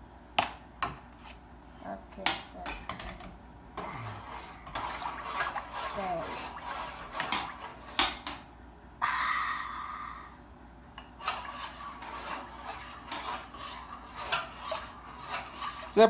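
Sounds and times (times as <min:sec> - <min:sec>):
utensil scraping and clinking on pot: 0:04.3 - 0:08.2, 0:11.0 - 0:16.0.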